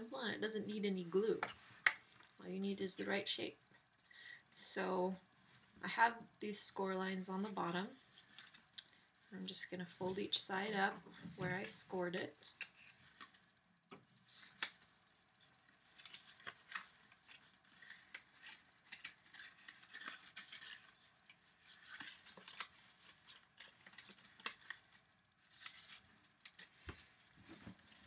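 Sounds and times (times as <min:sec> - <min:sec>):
paper crackling and rustling: 0:07.9 - 0:10.5, 0:11.1 - 0:13.5, 0:14.2 - 0:28.0.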